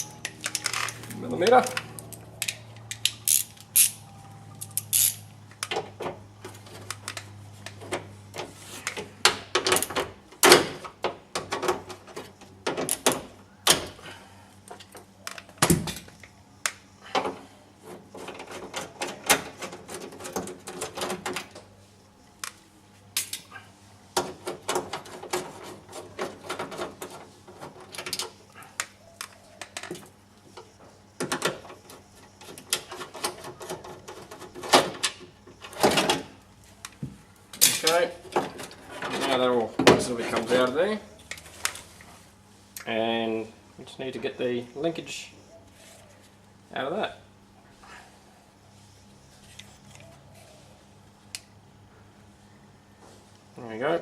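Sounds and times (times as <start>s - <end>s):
tools and parts clinking: 0.0s - 7.9s, 23.2s - 23.5s, 37.5s - 41.8s
ratchet wrench clicking: 1.6s - 4.0s, 4.6s - 5.2s.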